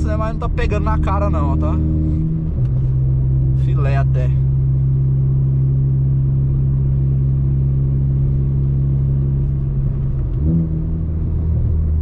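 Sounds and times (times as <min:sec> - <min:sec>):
car engine droning inside cabin: 0:00.0 - 0:12.0.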